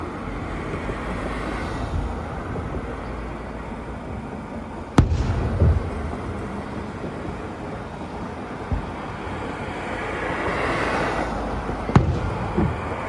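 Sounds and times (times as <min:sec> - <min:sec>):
steady rushing background: 0:00.0 - 0:13.0
rumbling echoes: 0:04.7 - 0:10.6, 0:11.4 - 0:13.0
sharp loud firework bang: 0:05.0 - 0:07.4, 0:11.9 - 0:13.0
dull low firework boom: 0:05.0 - 0:09.1, 0:11.7 - 0:13.0.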